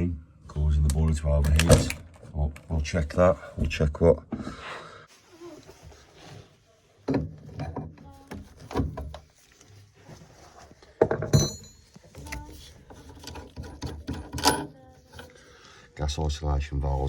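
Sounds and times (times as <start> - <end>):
tools knocking and clicking: 11.0 - 15.3
metal clink ringing: 11.3 - 12.1.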